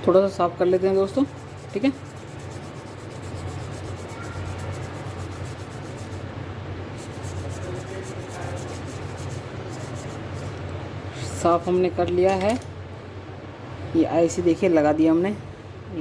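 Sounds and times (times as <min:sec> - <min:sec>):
low steady hum: 0:00.0 - 0:16.0
scratchy scrubbing of circuit board: 0:00.7 - 0:06.3, 0:07.0 - 0:10.6.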